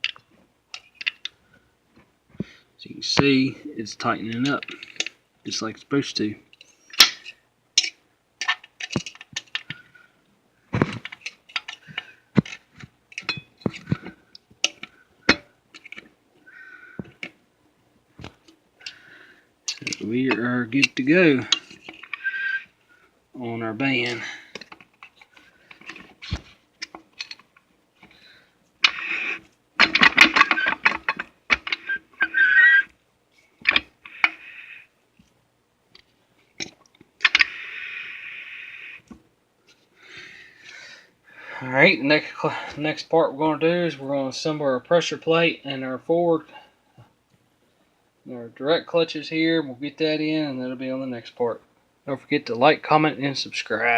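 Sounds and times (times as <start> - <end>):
metal parts clicking and clinking: 6.6 - 9.8, 11.0 - 11.8, 12.4 - 14.0, 19.7 - 22.6, 24.0 - 27.6, 28.8 - 32.0
metal scrape: 28.8 - 32.8.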